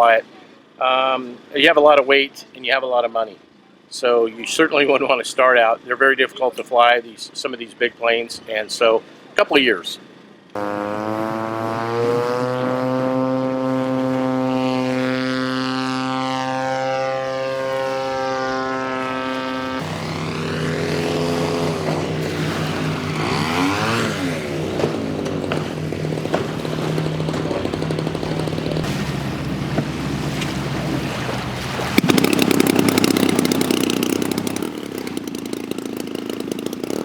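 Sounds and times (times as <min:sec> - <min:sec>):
model airplane engines: 0:10.5 - 0:37.0.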